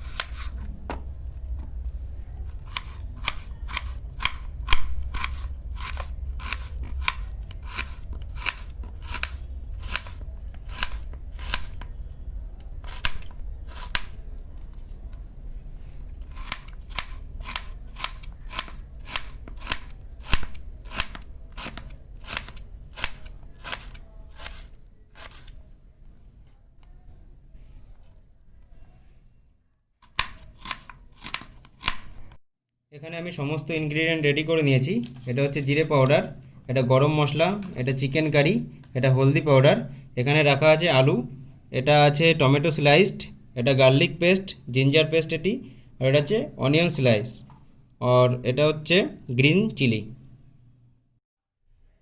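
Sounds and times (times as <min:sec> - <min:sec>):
knife slicing onion on board: 0:02.6 - 0:11.9, 0:16.4 - 0:25.6.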